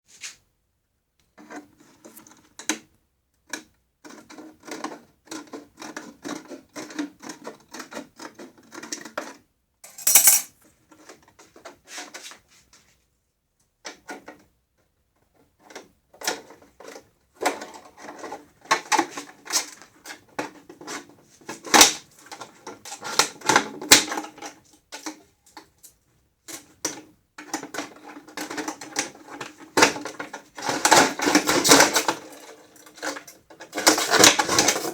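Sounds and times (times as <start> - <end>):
hard plastic parts clicking and rattling: 26.5 - 34.9.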